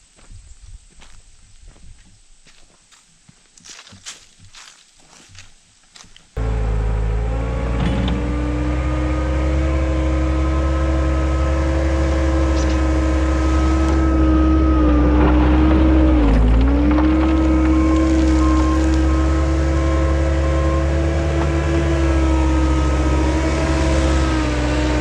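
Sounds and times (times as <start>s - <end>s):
tractor loader engine running: 6.4s - 25.0s.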